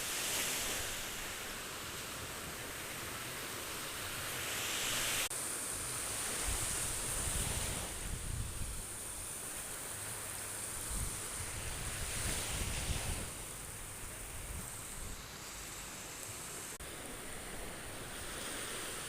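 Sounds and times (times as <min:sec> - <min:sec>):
surf washing: 0:00.0 - 0:19.0
wind buffeting microphone: 0:06.4 - 0:09.0, 0:10.8 - 0:15.2.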